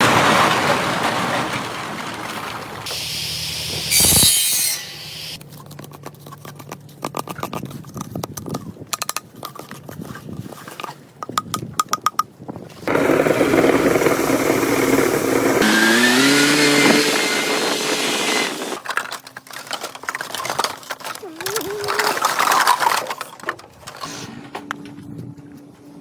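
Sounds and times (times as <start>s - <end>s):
brief loud hiss: 2.9s - 5.4s.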